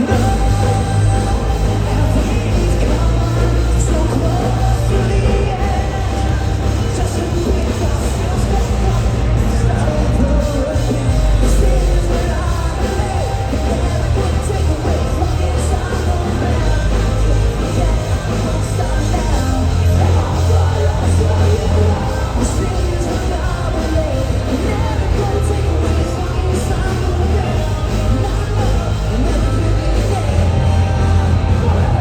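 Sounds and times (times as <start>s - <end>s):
distorted guitars: 0.0s - 32.0s
drums: 0.0s - 32.0s
heavy bass: 0.0s - 32.0s
sung and screamed vocals: 0.0s - 32.0s.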